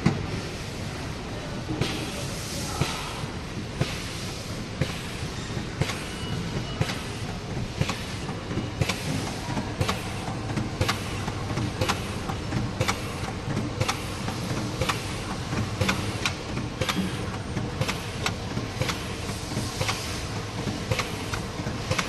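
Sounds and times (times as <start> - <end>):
machine mechanical hum: 0.0 - 22.0
sharp machine clicks: 14.8 - 17.1.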